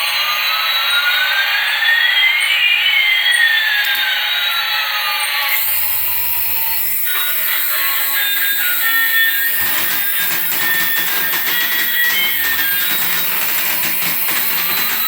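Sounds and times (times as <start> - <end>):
electronic sliding whining tones: 4.5 - 15.0.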